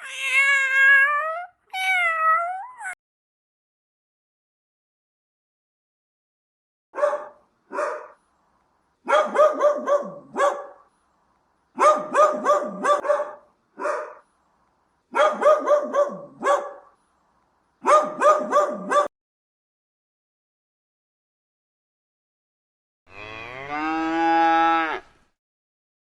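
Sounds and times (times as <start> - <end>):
dog barking: 7.0 - 8.2, 9.0 - 10.9, 11.8 - 14.2, 15.1 - 17.0, 17.8 - 19.1.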